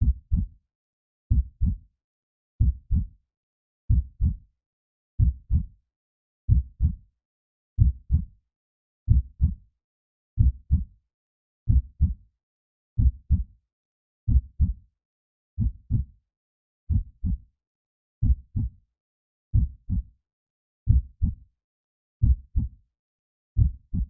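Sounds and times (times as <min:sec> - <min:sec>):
heartbeat thumps: 0:03.9 - 0:04.4, 0:06.5 - 0:07.0, 0:07.8 - 0:08.2, 0:09.1 - 0:09.6, 0:18.2 - 0:18.7, 0:19.6 - 0:20.0, 0:23.6 - 0:24.0.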